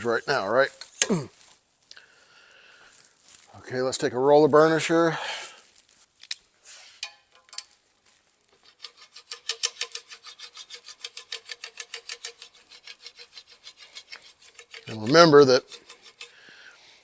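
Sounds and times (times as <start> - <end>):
roller burnisher rubbing on metal tube: 8.5 - 16.4.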